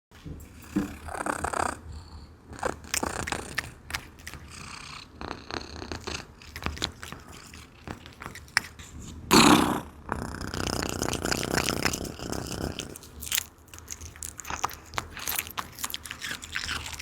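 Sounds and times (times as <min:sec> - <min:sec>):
cat purring: 0:00.4 - 0:13.2
cat chewing wetly: 0:00.7 - 0:09.3, 0:10.3 - 0:17.0.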